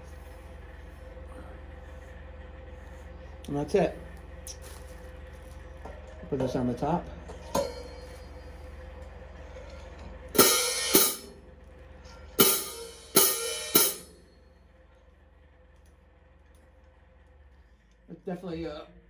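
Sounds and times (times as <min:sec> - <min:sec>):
faint steady hum: 0:00.0 - 0:19.0
hi-hat cymbals: 0:10.4 - 0:11.4, 0:12.3 - 0:14.2.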